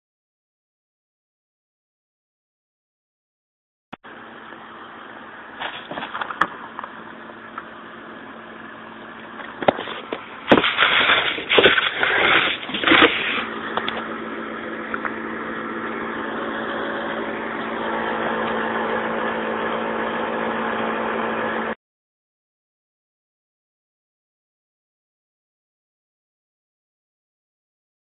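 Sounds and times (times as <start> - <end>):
steady mechanical hum: 4.0 - 21.8.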